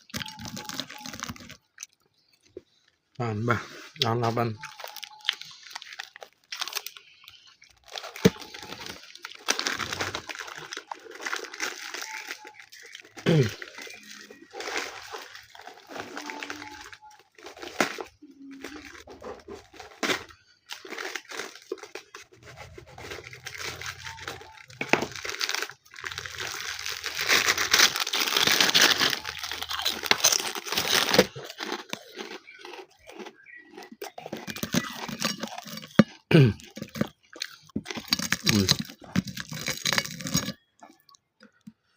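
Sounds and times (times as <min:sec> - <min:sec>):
crunching and chewing food: 0:00.0 - 0:41.9.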